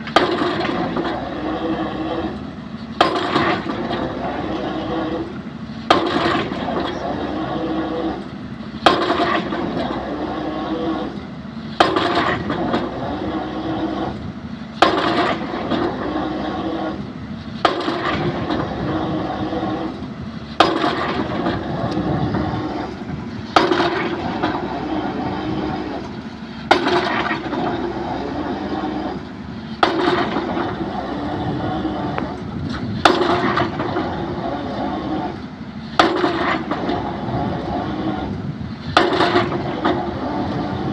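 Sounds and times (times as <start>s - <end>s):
excavator engine running: 0.0s - 40.9s
drop hammer striking concrete pile: 20.6s - 21.6s, 23.6s - 24.6s, 36.0s - 36.9s, 39.0s - 40.0s.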